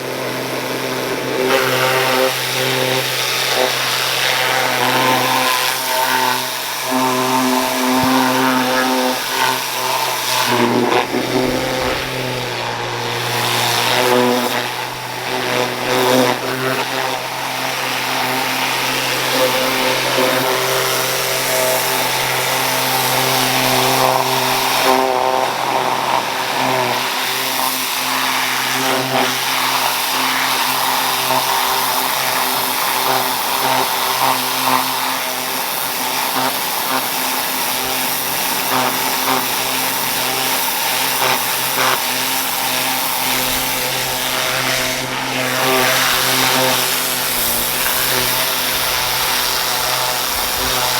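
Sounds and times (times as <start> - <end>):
pressure washer engine humming: 0.0 - 50.9
water spray hissing: 4.8 - 16.2.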